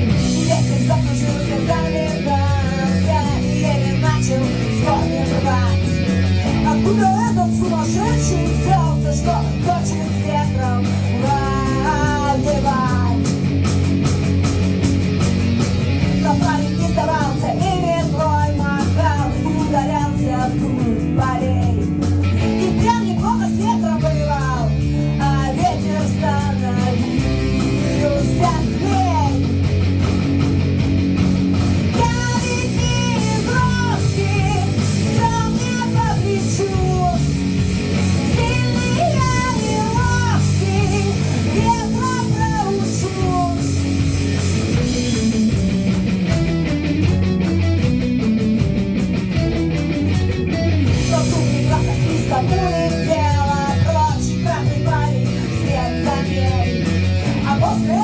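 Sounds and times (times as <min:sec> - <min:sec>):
rock band playing: 0:00.0 - 0:58.0.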